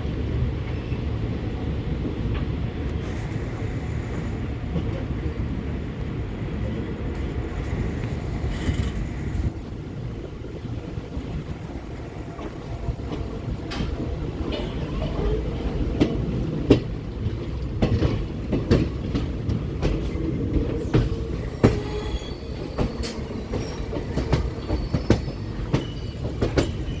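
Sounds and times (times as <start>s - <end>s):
train low rumble: 0.0s - 27.0s
wheels clacking over rail joints: 8.2s - 27.0s
high wheel squeals: 20.8s - 27.0s.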